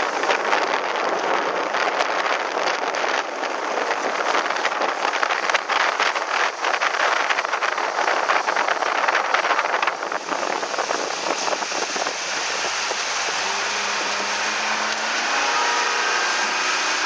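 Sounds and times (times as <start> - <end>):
motorboat running: 0.0 - 17.0
wind and water rushing: 0.0 - 17.0
spray spatters and hull slaps: 8.2 - 17.0.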